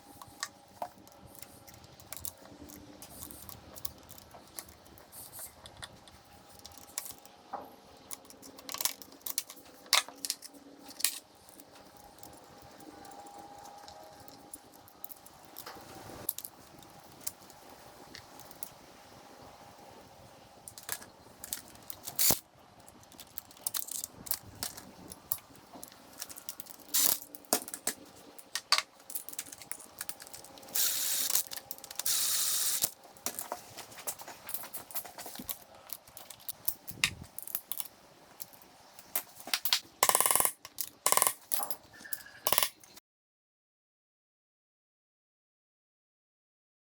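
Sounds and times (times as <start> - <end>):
metal tools clinking: 23.0 - 43.0
socket ratchet clicking: 26.2 - 27.9, 28.5 - 33.0, 39.7 - 41.4, 42.5 - 42.8.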